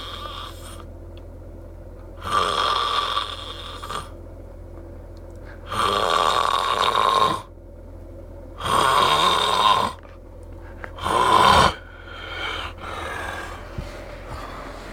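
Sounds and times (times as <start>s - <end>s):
man snoring loudly: 0.0s - 0.8s, 2.2s - 4.2s, 5.6s - 7.5s, 8.6s - 10.0s, 11.0s - 14.9s.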